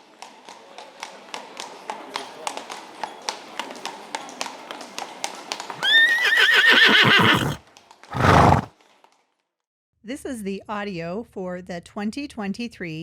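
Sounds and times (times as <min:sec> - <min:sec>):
horse hooves clip-clopping: 0:05.8 - 0:08.7
horse whinnying: 0:05.8 - 0:08.7.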